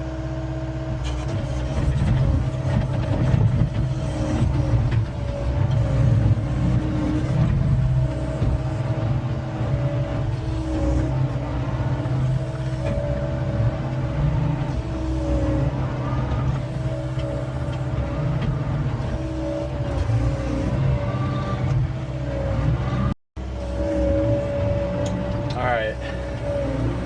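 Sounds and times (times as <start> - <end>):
diesel engine under hydraulic load: 0.0 - 27.0
hydraulic whine: 0.0 - 27.0.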